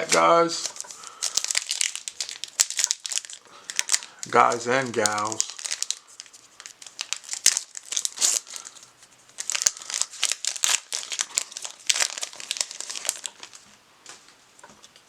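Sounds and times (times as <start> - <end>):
foil wrapper crinkling: 0.1 - 15.0.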